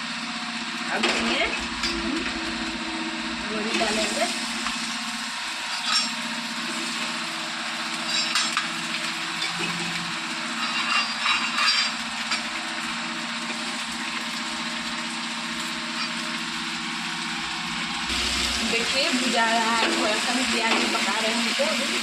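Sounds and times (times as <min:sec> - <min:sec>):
food frying in oil: 0:00.0 - 0:22.0
steady low hum: 0:01.0 - 0:05.3, 0:17.3 - 0:20.4.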